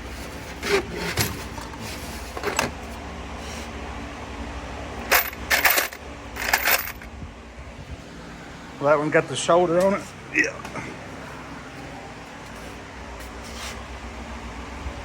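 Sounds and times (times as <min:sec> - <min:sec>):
metal bolts clinking and rattling: 0:05.0 - 0:07.1.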